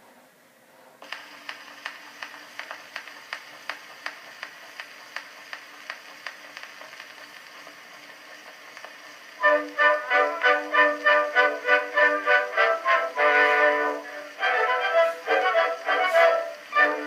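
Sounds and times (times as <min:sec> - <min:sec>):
phonograph surface hiss: 0:00.0 - 0:17.0
phonograph clicks: 0:01.0 - 0:07.7.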